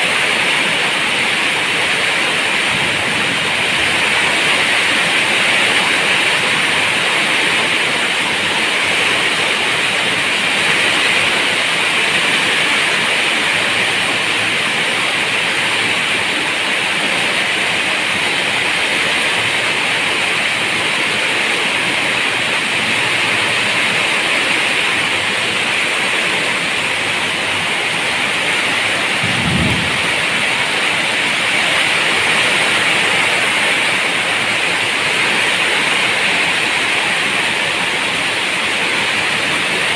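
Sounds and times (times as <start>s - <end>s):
heavy rain falling: 0.0s - 39.9s
low rumble: 29.2s - 31.0s.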